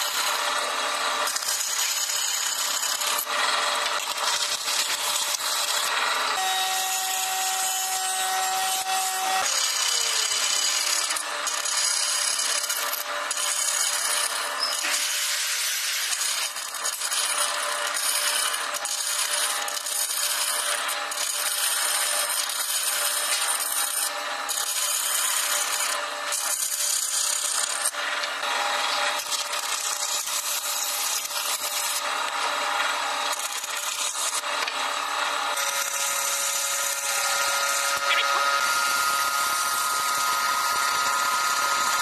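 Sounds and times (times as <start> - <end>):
tool rasping wood: 0.0 - 42.0
faint steady motor tone: 6.4 - 9.4.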